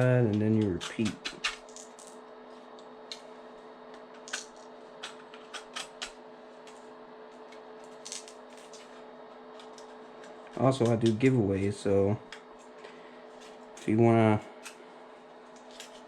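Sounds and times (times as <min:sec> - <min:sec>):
faint steady hum: 0:00.0 - 0:16.0
knife scraping plastic: 0:00.3 - 0:01.8.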